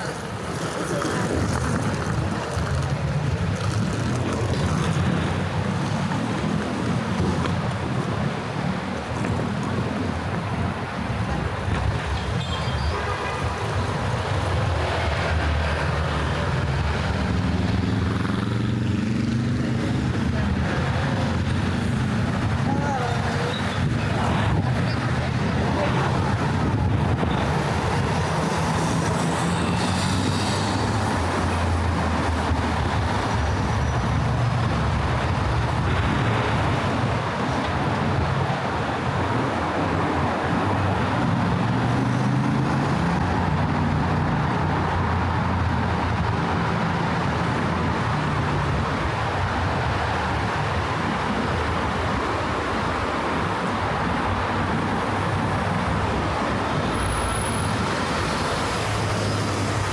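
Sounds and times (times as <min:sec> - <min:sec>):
vehicle engines running: 0:00.0 - 0:12.3, 0:13.5 - 0:59.9
tyres on road: 0:00.0 - 0:59.9.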